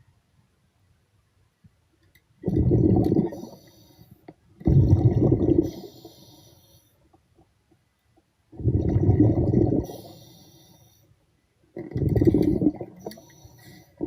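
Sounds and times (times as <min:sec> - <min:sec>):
diver exhaling bubbles: 0:02.4 - 0:03.7, 0:04.6 - 0:06.0, 0:08.6 - 0:10.2, 0:11.8 - 0:14.0.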